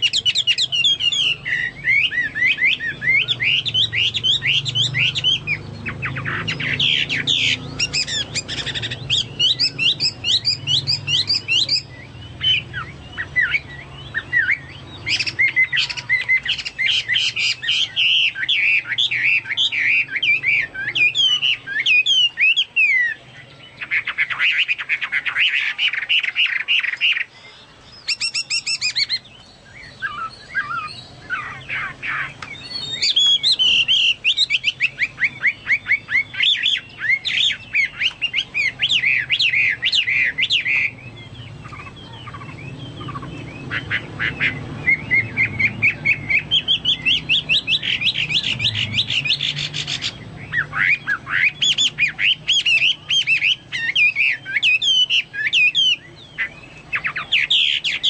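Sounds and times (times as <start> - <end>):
songbird singing rapid phrases: 0.0 - 58.0.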